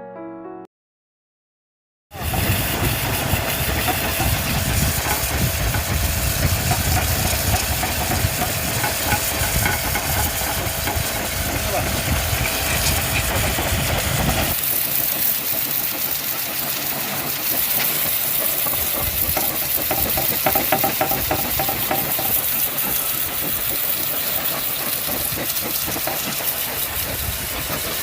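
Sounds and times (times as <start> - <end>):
pressure washer motor hum: 2.1 - 28.0
water jet hissing: 2.2 - 28.0.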